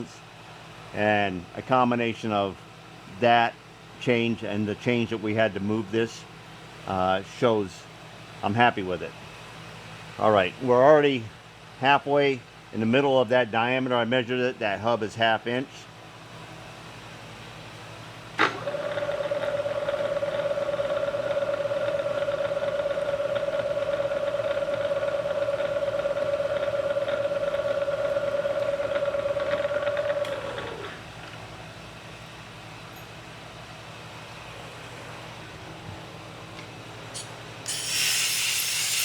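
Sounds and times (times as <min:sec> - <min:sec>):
electric drill drilling metal: 0:37.6 - 0:39.0.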